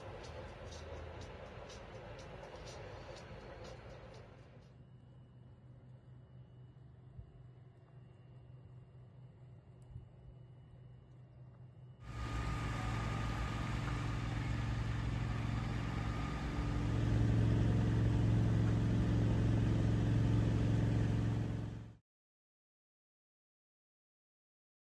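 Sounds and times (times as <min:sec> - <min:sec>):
vehicle engine running: 0:12.1 - 0:22.0.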